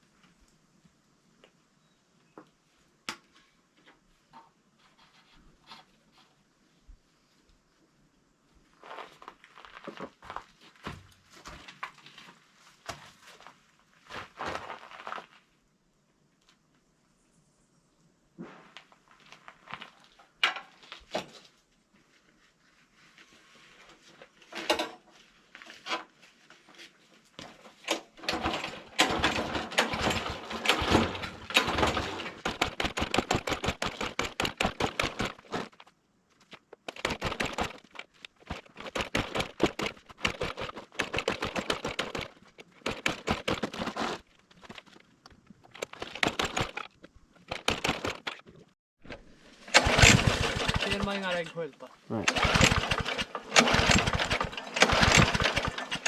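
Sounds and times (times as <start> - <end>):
lawnmower engine starting: 27.5 - 35.8, 36.8 - 44.9, 45.7 - 56.0.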